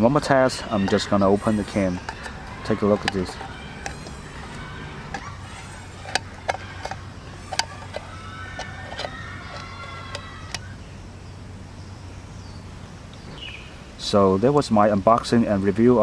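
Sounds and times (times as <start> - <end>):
can opener metal clicks: 0.8 - 10.7.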